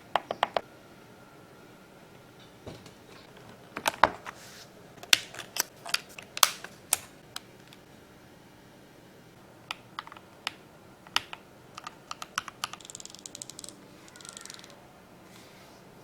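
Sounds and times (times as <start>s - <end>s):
mechanical keyboard keys clicking: 9.7s - 14.8s.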